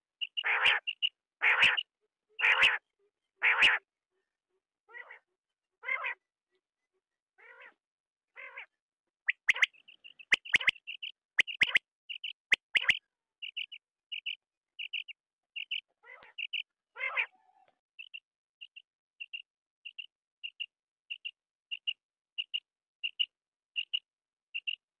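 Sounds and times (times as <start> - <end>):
quail rasping calls: 0.0 - 2.8, 3.4 - 3.8, 4.9 - 5.2, 5.8 - 6.2, 8.4 - 8.7, 9.3 - 13.0, 15.6 - 17.8
short high chirps: 9.3 - 10.8
sharp clicks: 10.3 - 10.8.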